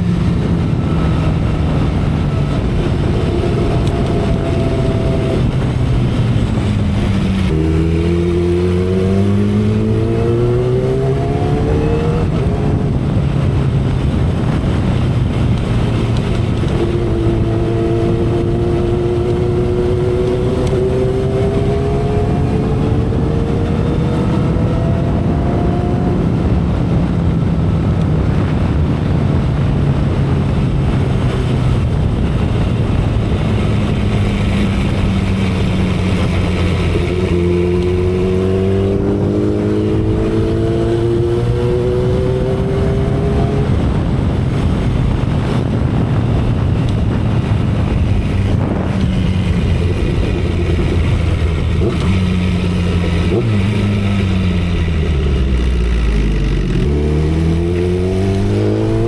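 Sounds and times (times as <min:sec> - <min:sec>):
motorcycle engine at speed: 0:00.0 - 0:59.0
wind and road noise: 0:00.0 - 0:59.0.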